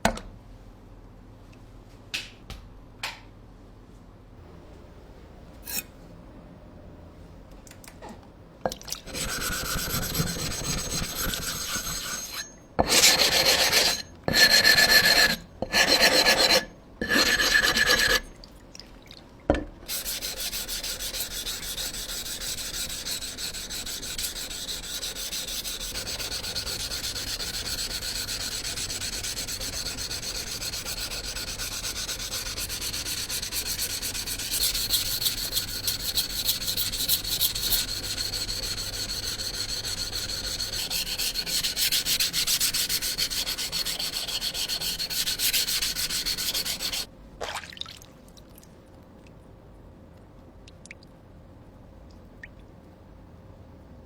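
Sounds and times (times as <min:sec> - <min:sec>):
blade rubbing on sharpening stone: 0:05.6 - 0:05.9, 0:09.1 - 0:18.2, 0:19.9 - 0:47.1.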